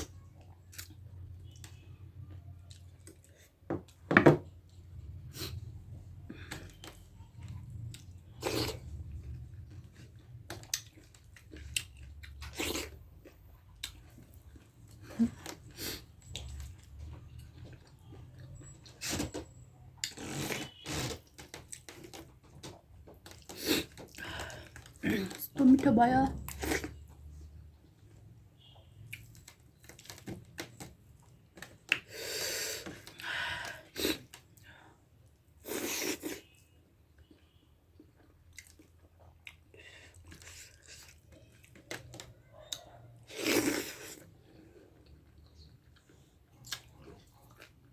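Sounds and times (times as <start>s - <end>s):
chewing and biting: 37.2s - 47.9s.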